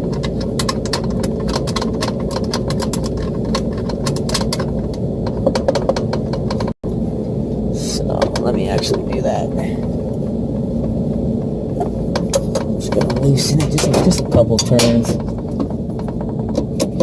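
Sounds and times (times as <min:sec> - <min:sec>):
small irregular clicks and rattles: 0:00.0 - 0:06.8, 0:11.7 - 0:17.0
hvac machinery humming: 0:00.0 - 0:17.0.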